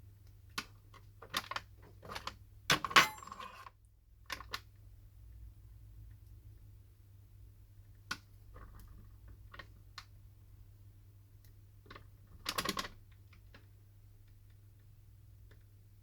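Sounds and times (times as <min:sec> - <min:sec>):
small tools clicking and tapping: 0:01.4 - 0:03.7.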